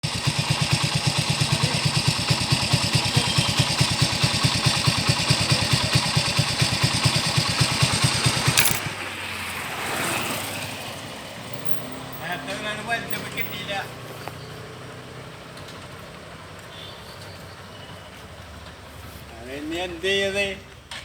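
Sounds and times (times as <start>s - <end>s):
motorcycle engine idling: 0.1s - 8.8s, 11.5s - 12.2s.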